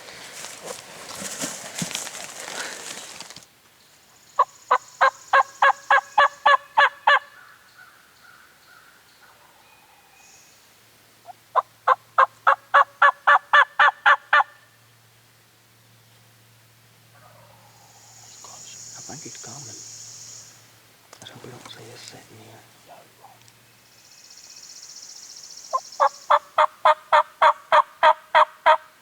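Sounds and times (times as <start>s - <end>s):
brief rustling: 0.0s - 3.5s
turkey call hen yelps: 5.0s - 7.5s, 11.5s - 14.5s, 26.0s - 28.9s.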